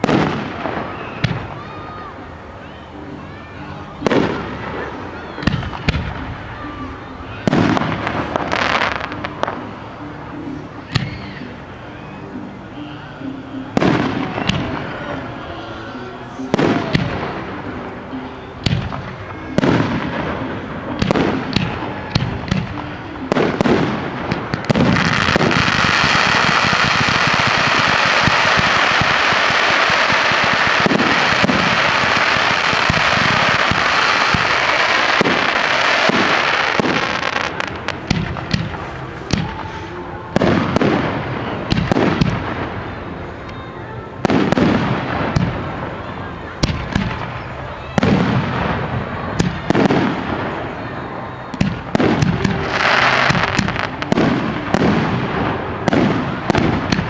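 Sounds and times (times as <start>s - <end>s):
fireworks bangs: 0.0s - 1.8s, 4.0s - 9.7s, 16.4s - 43.0s, 44.2s - 57.0s
fireworks rapid cracks: 18.6s - 42.6s.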